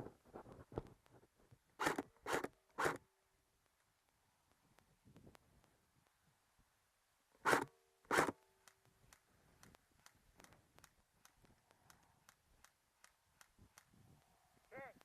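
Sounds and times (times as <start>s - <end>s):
airsoft gun shots: 1.8s - 3.0s, 7.4s - 8.4s.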